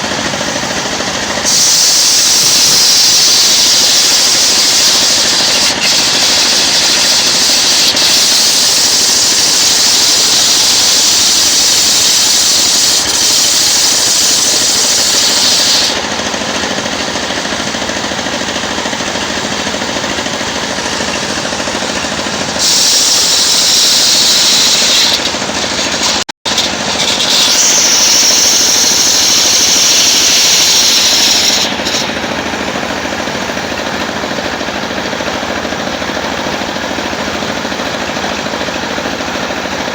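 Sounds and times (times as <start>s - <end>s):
high-pitched saw cutting wood: 0.0s - 17.6s, 18.5s - 32.7s
sawmill machine running: 0.0s - 39.9s.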